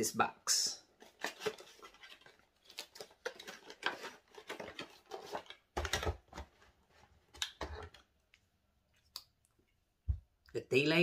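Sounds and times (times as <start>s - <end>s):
cardboard packaging rustling: 0.9s - 8.1s.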